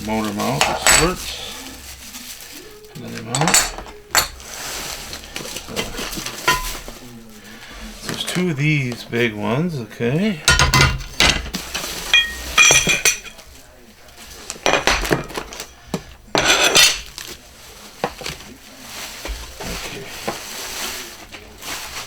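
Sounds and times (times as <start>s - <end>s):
packaging crinkling: 0.0s - 9.2s, 16.8s - 22.0s
metal parts clinking together: 12.1s - 13.4s.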